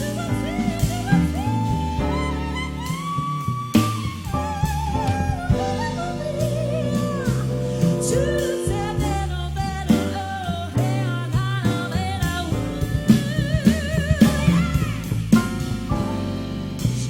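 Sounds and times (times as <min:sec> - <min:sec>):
instrumental backing with bass and drums: 0:00.0 - 0:17.0
vocal group singing: 0:04.3 - 0:15.2.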